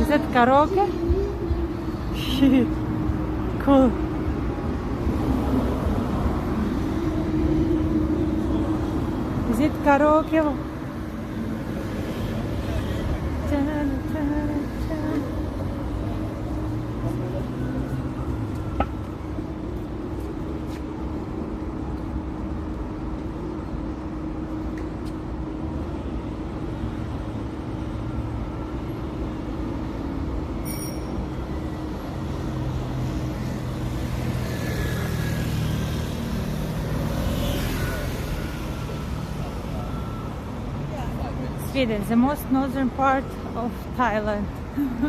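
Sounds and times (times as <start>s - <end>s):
city street traffic rumble: 0.0s - 45.0s.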